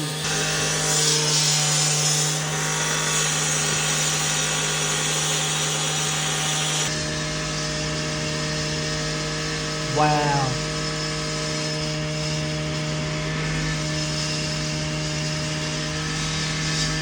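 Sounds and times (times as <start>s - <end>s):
concrete saw motor drone: 0.0s - 17.0s
saw blade grinding concrete: 0.0s - 17.0s.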